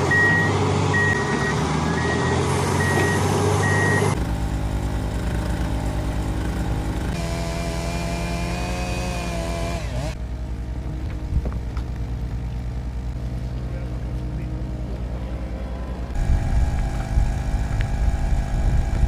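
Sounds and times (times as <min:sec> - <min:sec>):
diesel machinery engine: 0:00.0 - 0:19.0
reversing alarm beeping: 0:00.1 - 0:04.2.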